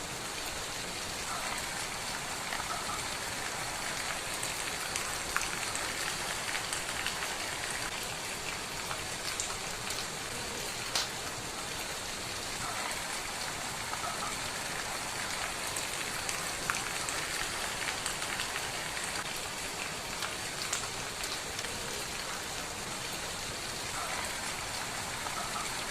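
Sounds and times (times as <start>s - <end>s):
steady rain: 0.0s - 25.9s
wood fire crackling: 3.3s - 12.0s, 15.1s - 23.2s.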